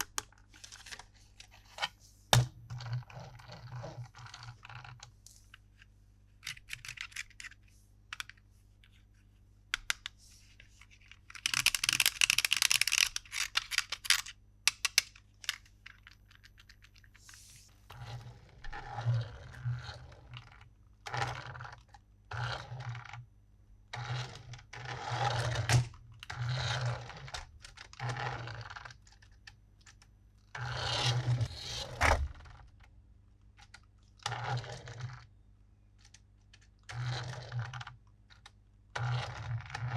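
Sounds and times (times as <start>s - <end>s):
plastic clicks: 0.0s - 1.0s, 6.4s - 9.0s, 9.8s - 17.2s
plastic scrapes and rattles: 9.8s - 23.2s, 30.7s - 32.6s
packaging crinkling rustle: 10.9s - 15.0s.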